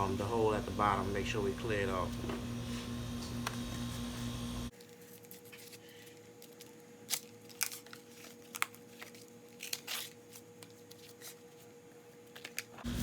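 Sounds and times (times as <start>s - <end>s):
steady hum: 0.0s - 4.7s.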